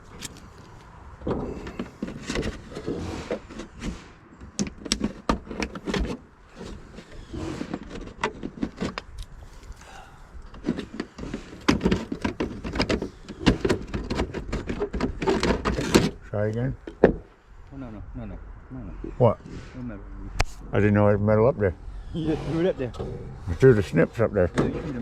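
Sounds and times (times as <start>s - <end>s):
steady low rumble: 17.5s - 25.0s.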